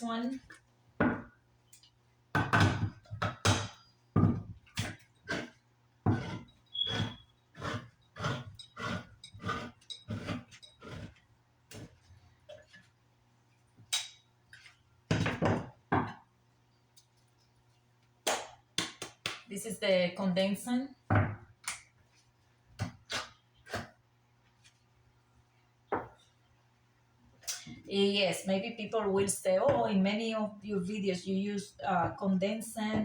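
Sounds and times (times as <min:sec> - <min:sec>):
can opener squeak: 0:06.3 - 0:07.9.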